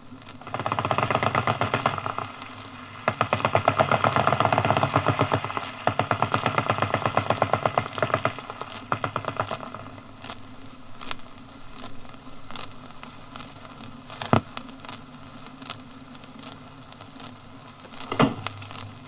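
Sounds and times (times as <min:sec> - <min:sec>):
record hiss and hum: 0:00.0 - 0:19.0
gunshots: 0:00.4 - 0:11.4, 0:17.9 - 0:19.0.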